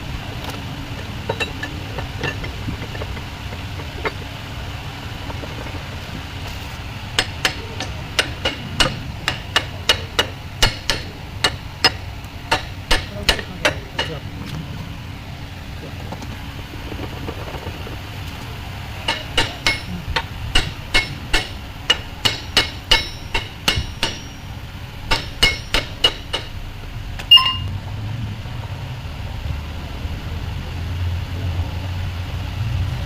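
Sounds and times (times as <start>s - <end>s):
hammer striking metal: 7.2s - 14.2s, 19.1s - 26.6s, 27.3s - 27.7s.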